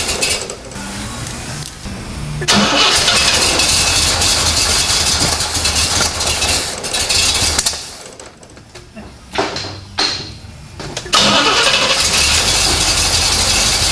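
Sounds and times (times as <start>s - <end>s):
car engine cranking and starting: 0.0s - 0.8s, 2.4s - 8.5s, 11.0s - 13.9s.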